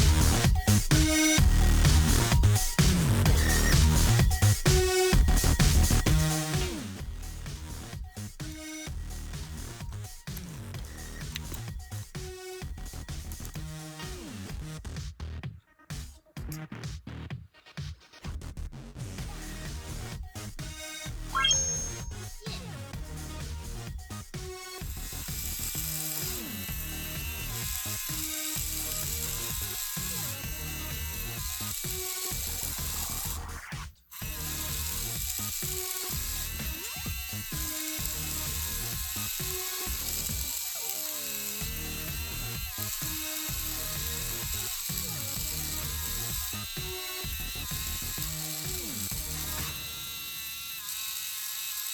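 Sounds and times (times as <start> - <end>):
background music: 0.0 - 14.4
toy car motors whirring: 8.6 - 13.7, 21.4 - 51.9.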